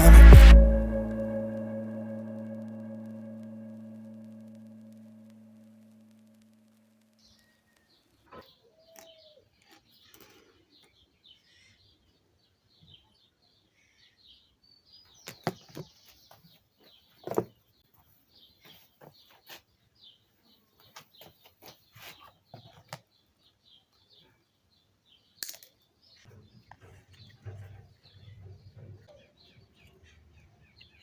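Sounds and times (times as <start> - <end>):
small birds chirping: 7.2 - 31.0.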